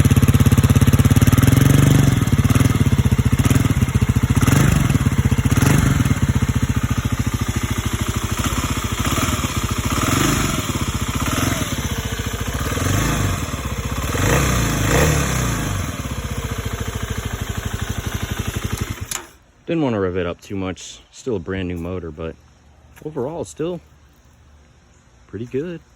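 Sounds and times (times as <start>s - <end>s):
motorcycle engine idling: 0.0s - 19.4s.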